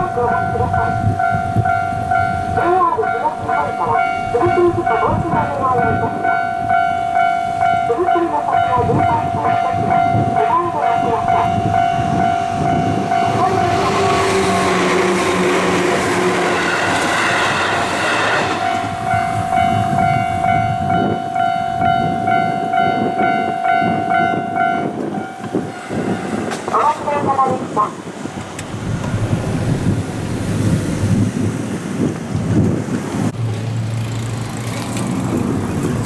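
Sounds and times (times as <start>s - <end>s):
railroad crossing alarm: 0.0s - 28.4s
train rumble and wheel noise: 0.0s - 36.0s.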